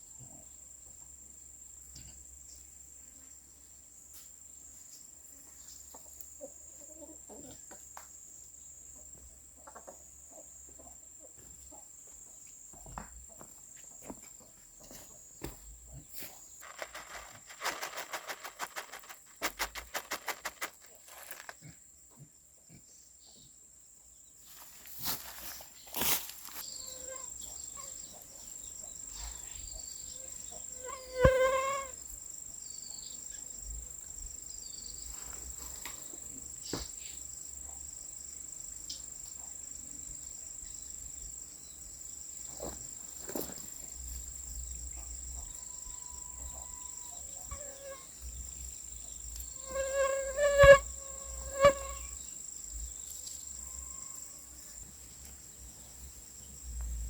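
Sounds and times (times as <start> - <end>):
crickets droning: 12.0 - 57.0.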